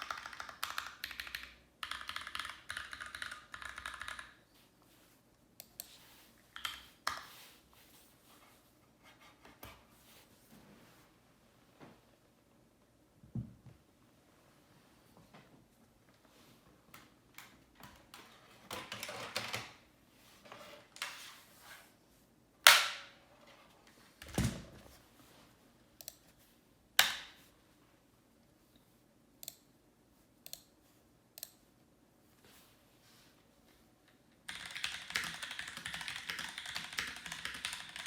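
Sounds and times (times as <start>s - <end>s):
keyboard keys clicking: 0.0s - 4.4s, 34.4s - 38.0s.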